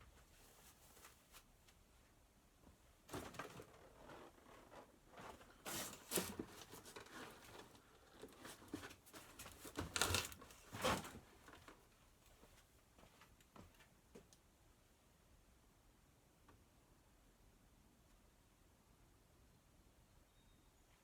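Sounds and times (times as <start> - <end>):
rustling and knocking of handled objects: 0.0 - 14.3.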